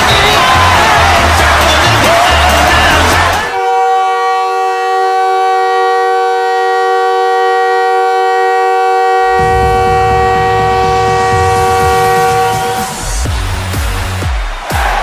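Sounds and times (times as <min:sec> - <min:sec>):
music: 0:00.0 - 0:03.6, 0:09.3 - 0:15.0
arena goal horn blasting: 0:00.0 - 0:13.3.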